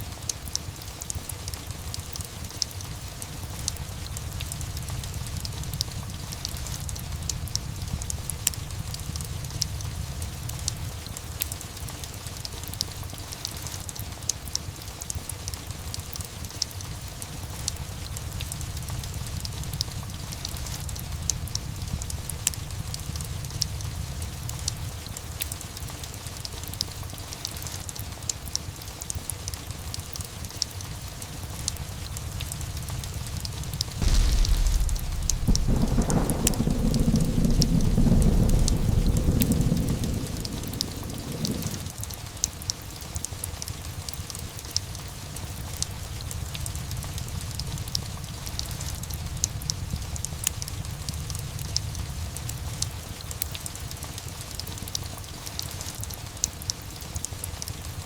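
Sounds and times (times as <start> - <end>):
steady rain: 0.0 - 58.0
fireplace crackling and popping: 31.6 - 43.2.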